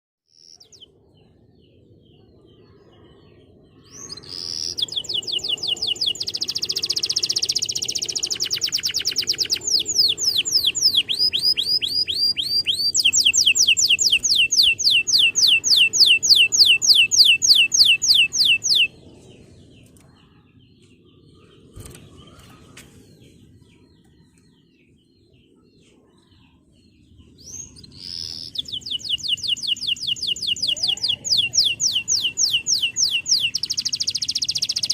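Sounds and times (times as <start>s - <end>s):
faint bird chirps: 0.3s - 34.9s
canary singing in rapid trills: 3.8s - 22.7s, 27.0s - 34.9s.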